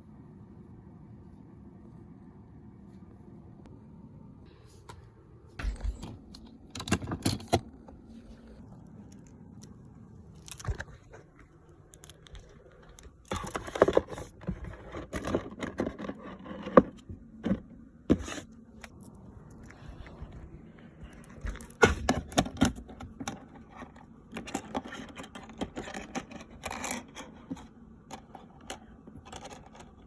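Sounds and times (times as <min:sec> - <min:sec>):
fidget toys clicking and clattering: 0:11.5 - 0:16.8, 0:22.4 - 0:30.0.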